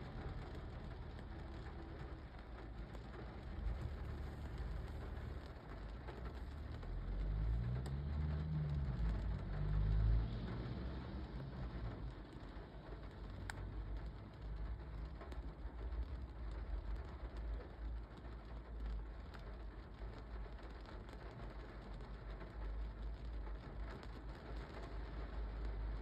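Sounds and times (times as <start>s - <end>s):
low rumble: 0.0s - 17.9s
rain drumming on car roof: 0.0s - 26.0s.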